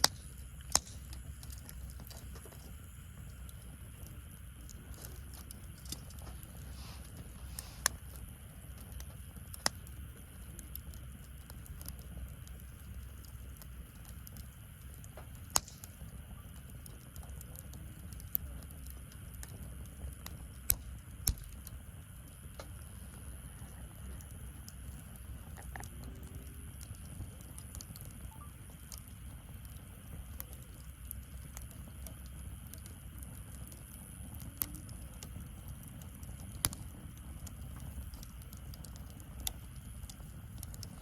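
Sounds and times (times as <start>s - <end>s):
fire crackling pops: 0.0s - 41.0s
low rumble of flames: 0.0s - 41.0s.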